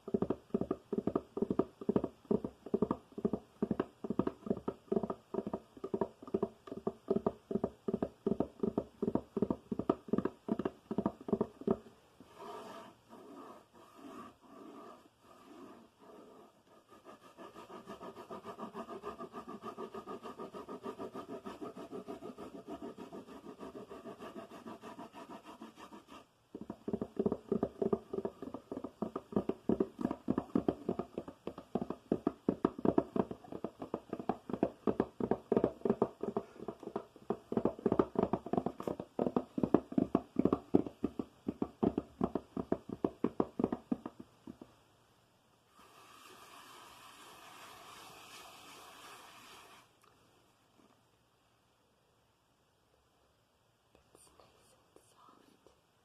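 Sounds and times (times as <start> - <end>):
fingers tapping on hard object: 0.0 - 11.9, 17.8 - 44.7.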